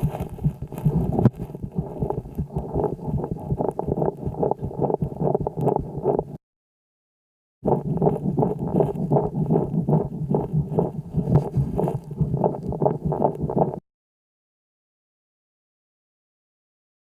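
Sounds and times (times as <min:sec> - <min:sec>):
lung breath sounds with clicks: 0:00.0 - 0:06.4, 0:07.7 - 0:13.8.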